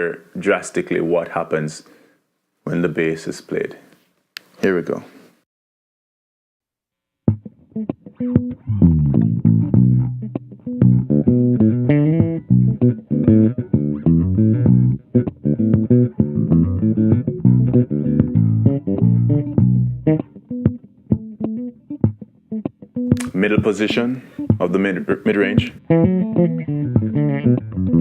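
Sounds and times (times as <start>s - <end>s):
electric bass playing a groove: 7.3s - 28.0s.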